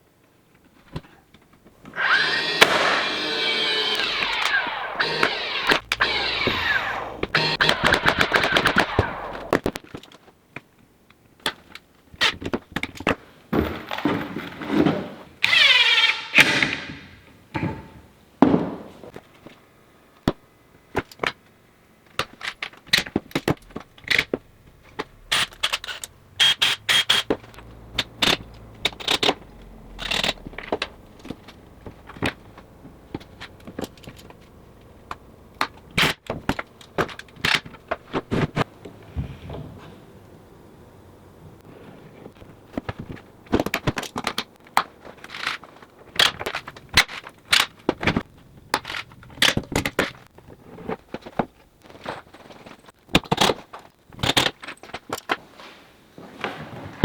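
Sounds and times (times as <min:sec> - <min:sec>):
cordless drill whirring: 0:01.9 - 0:09.5, 0:15.4 - 0:16.4, 0:25.3 - 0:27.4.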